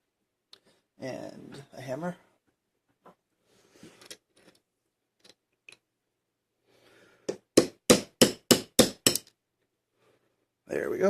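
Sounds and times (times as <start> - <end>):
hammer striking metal punch: 7.6 - 9.2.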